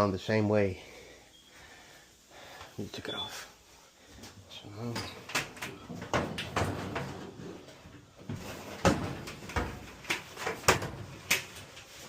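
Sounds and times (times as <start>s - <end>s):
metal dryer drum knocks and clunks: 5.5s - 11.3s.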